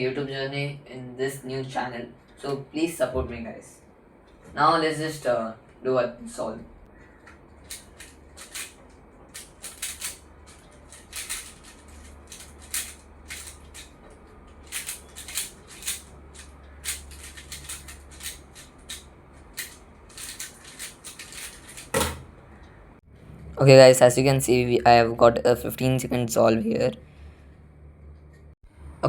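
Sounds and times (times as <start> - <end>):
plastic puzzle cube clicking: 7.7 - 13.9, 14.6 - 19.0, 19.6 - 21.9.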